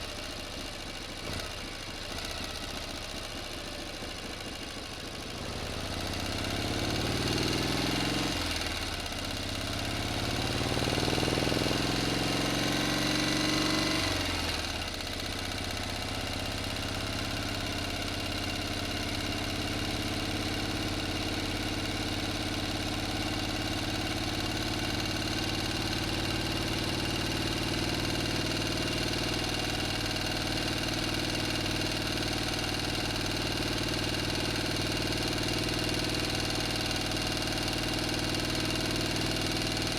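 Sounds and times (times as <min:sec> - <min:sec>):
engine idling: 0:00.0 - 0:39.9
engine revving: 0:05.5 - 0:09.0, 0:09.8 - 0:14.9.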